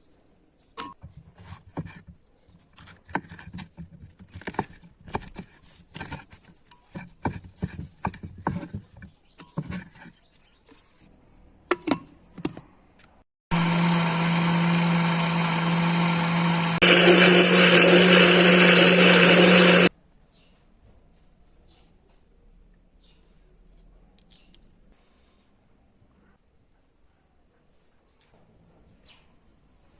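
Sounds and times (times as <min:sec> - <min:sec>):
electric blender running: 0:13.5 - 0:19.9.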